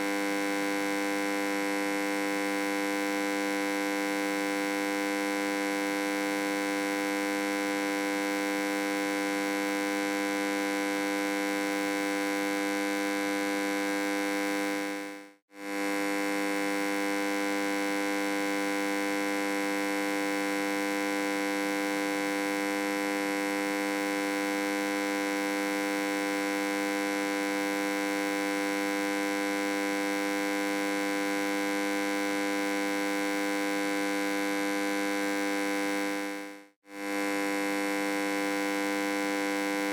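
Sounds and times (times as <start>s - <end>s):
buzzy electric hum: 10.0s - 14.7s, 15.6s - 18.4s, 31.0s - 36.0s, 37.0s - 39.9s.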